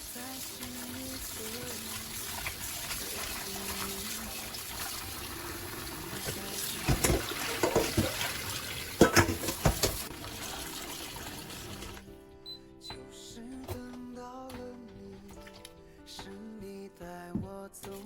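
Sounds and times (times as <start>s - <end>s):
tap running into sink: 0.6s - 12.0s
knocks and clatters in water: 6.3s - 10.1s.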